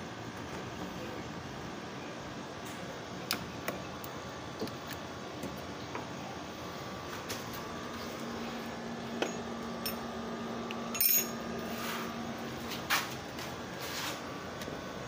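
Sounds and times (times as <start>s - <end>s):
metal tools clinking: 10.9s - 11.4s.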